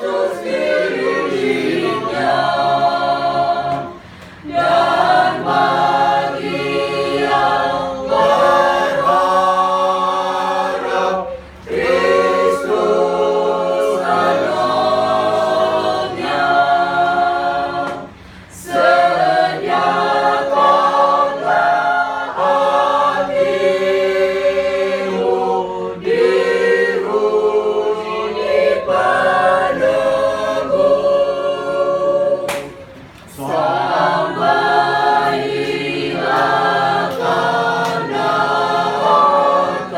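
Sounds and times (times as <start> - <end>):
choir singing a hymn: 0.0 - 39.9
singers breathing: 4.0 - 4.5, 11.3 - 11.7, 18.1 - 18.6.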